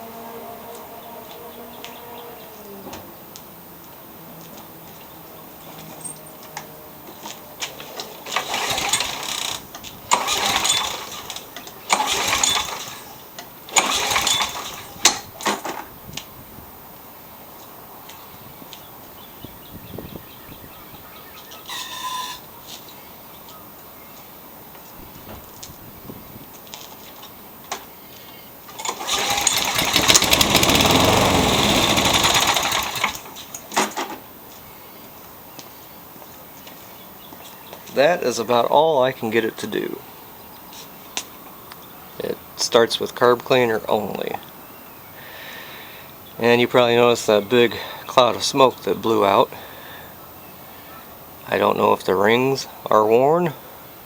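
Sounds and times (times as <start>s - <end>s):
starter rope whirring: 8.2s - 15.6s, 28.7s - 33.6s
engine turning over: 8.2s - 15.7s, 28.7s - 34.0s.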